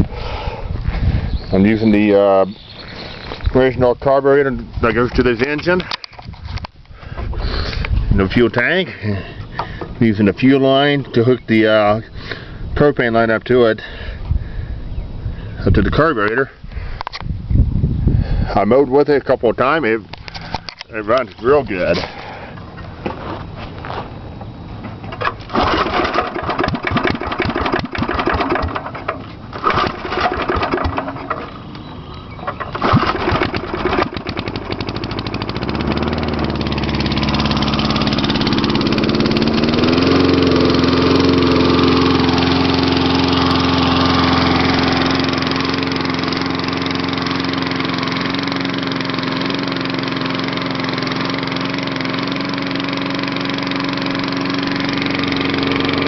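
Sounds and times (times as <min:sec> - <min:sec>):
lawnmower engine running: 0:20.2 - 0:56.0
lawnmower pull-start clattering: 0:24.8 - 0:56.0.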